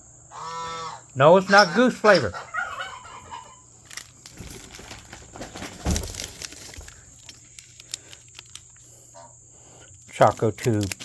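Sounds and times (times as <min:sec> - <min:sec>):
plastic packaging crinkling: 0:03.8 - 0:09.1, 0:09.9 - 0:11.0.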